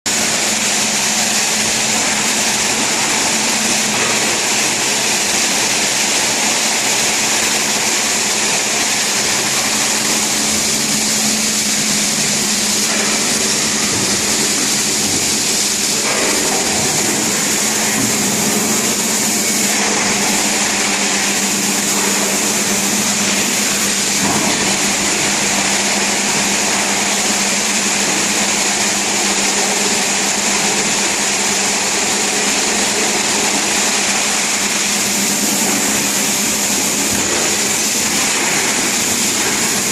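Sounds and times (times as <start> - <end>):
floor scrubber motor drone: 0.1 - 39.9.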